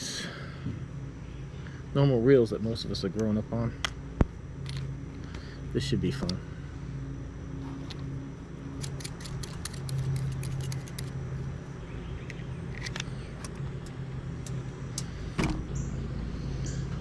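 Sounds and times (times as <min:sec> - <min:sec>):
steady low hum: 0:00.0 - 0:17.0
fishing tackle clicking and rattling: 0:08.8 - 0:11.2.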